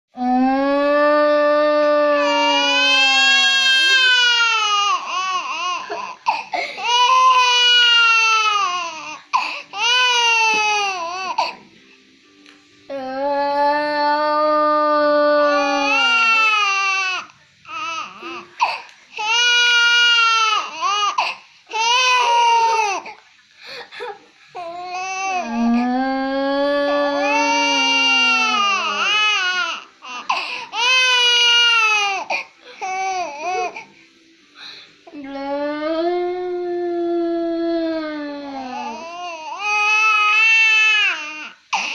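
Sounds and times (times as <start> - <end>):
young child crying: 25.4 - 29.6
drawn-out wailing cries: 25.4 - 30.2.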